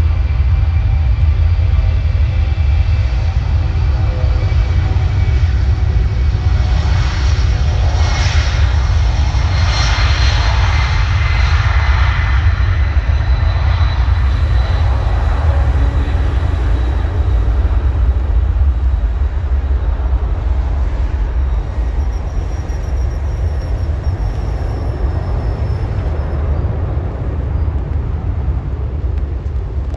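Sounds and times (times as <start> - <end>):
jet engines rumbling: 0.0 - 29.9
jet roar with faint whine: 0.0 - 29.9.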